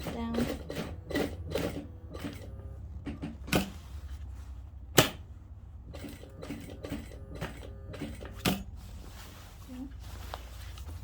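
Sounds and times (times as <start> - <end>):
sewing machine stitching: 0.0 - 3.8, 5.9 - 8.7.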